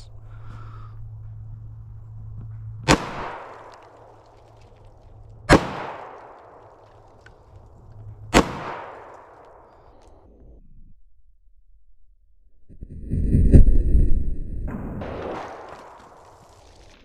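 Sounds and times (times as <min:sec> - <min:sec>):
pistol shots with echo: 0:02.8 - 0:04.2, 0:05.5 - 0:06.8, 0:08.3 - 0:10.0.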